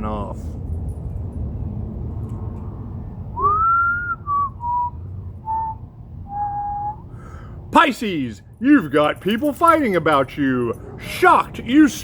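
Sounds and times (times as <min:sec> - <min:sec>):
person whistling a tune: 0:03.4 - 0:07.0.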